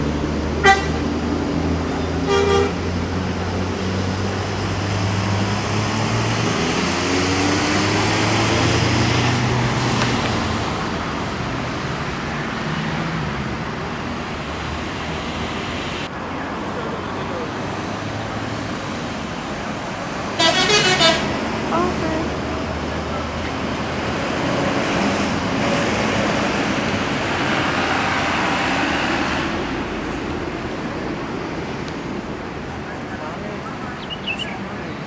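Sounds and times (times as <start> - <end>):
road noise: 0.0 - 35.0
car horn toot: 0.6 - 1.0, 2.2 - 2.9, 20.4 - 21.3
vehicle accelerating past: 2.8 - 15.5.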